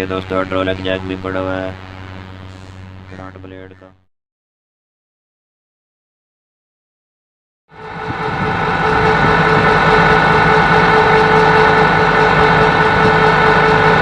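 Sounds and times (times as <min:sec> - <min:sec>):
engine droning: 0:07.8 - 0:14.0.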